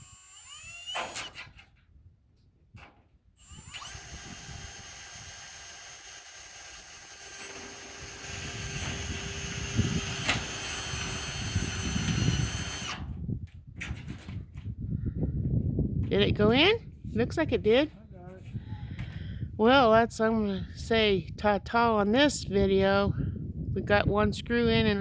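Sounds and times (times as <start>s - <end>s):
power drill motor whining: 0.0s - 1.6s, 3.4s - 13.2s.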